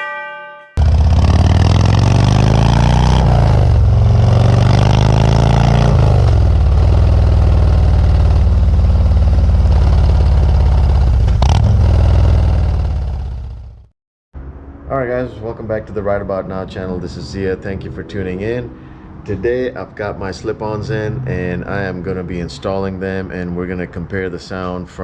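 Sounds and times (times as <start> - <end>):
motorcycle engine revving and idling: 0.8 - 13.9.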